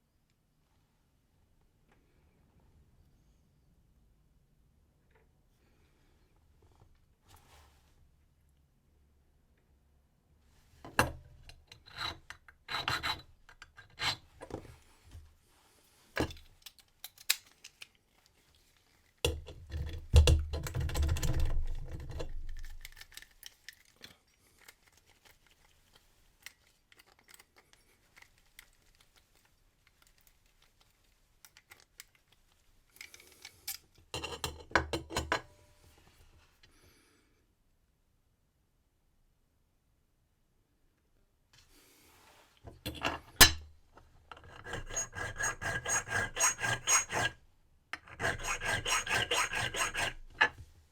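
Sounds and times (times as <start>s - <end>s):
file rasping on metal key: 11.7s - 14.2s, 44.4s - 47.4s, 48.0s - 50.6s
small clicks and handling noises: 16.2s - 34.5s.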